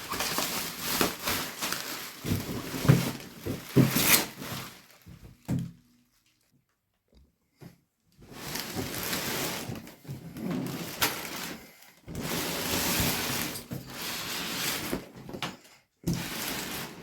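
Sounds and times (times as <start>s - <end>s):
packaging rustling: 0.0s - 6.5s.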